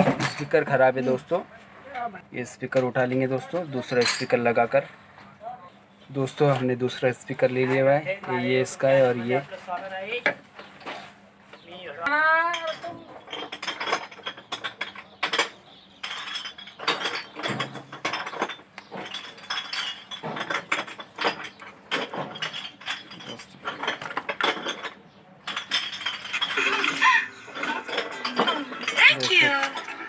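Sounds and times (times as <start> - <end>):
small metal parts clinking: 12.3 - 30.0.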